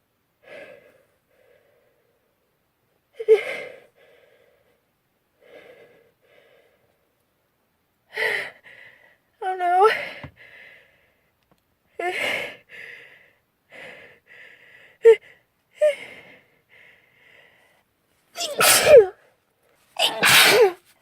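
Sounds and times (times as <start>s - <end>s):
woman sneezing loudly: 18.4s - 19.2s, 20.0s - 20.8s.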